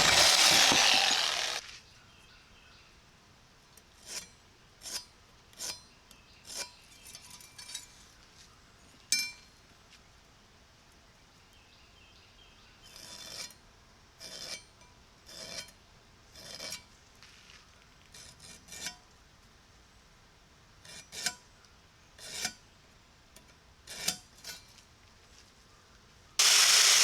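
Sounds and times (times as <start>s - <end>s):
hand file rasping on steel: 0.0s - 1.6s, 14.2s - 14.7s, 15.3s - 15.7s, 16.4s - 16.8s.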